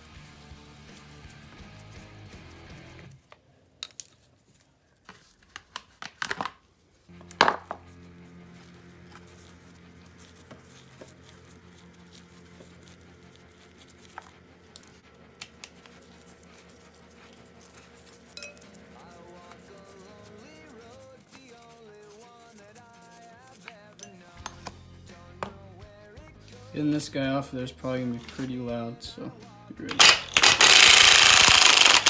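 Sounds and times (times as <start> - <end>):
background music: 0.0 - 3.2, 7.1 - 32.0
tools and bike parts clanking: 18.4 - 18.6.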